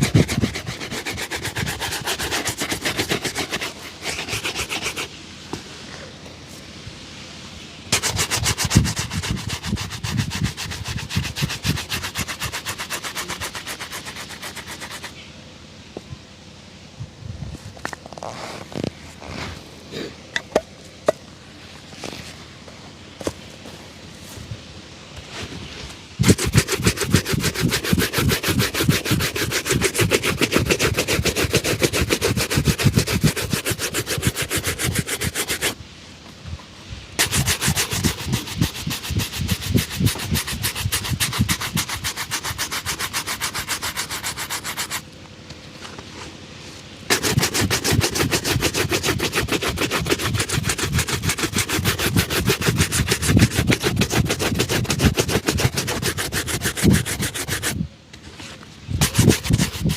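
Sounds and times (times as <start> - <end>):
shoe being buffed: 0.0 - 5.1, 7.9 - 15.2, 18.1 - 20.6, 26.2 - 35.8, 37.2 - 45.0, 47.1 - 57.8, 58.9 - 59.9.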